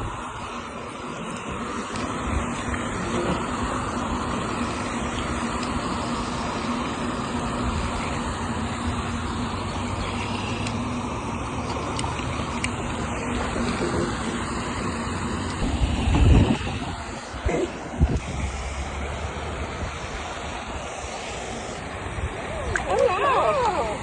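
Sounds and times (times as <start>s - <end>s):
faint constant hum: 0.0s - 24.0s
road traffic noise: 0.0s - 24.0s
low rumble on microphone: 15.6s - 20.6s.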